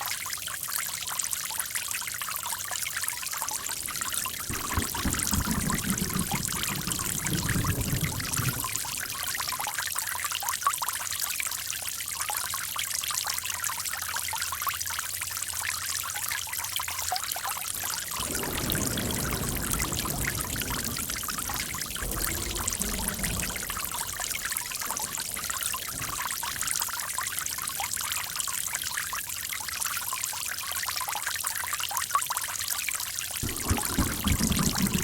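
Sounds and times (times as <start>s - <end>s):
running water: 0.9s - 10.3s, 17.0s - 31.1s, 33.4s - 35.0s
deeper splashing: 3.4s - 9.4s, 17.8s - 28.6s, 33.4s - 35.0s.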